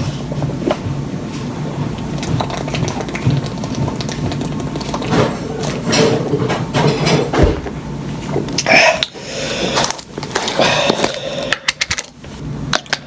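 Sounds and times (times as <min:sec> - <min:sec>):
person gulping water: 0:08.3 - 0:11.8.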